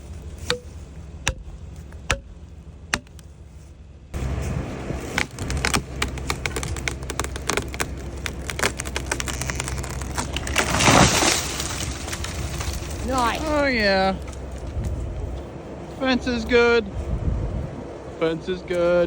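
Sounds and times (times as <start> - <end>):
engine idling: 0.0 - 10.7
wood cracking and splintering: 4.9 - 14.9
tree crashing to ground: 5.0 - 14.7.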